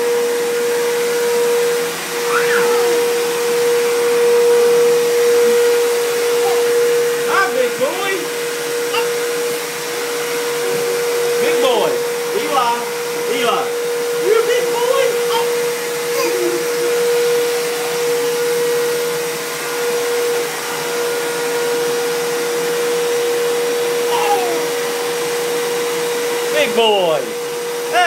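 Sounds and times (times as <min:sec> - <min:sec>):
vacuum cleaner running: 0:00.0 - 0:28.0.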